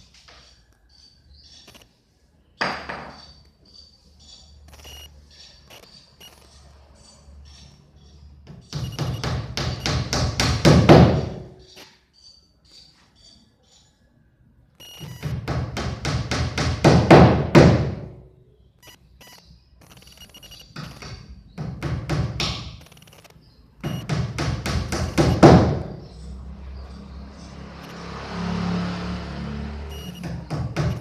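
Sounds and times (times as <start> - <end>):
rapid hammering: 8.5 - 11.5, 15.0 - 18.2, 20.7 - 22.8, 23.8 - 26.1, 29.9 - 31.0.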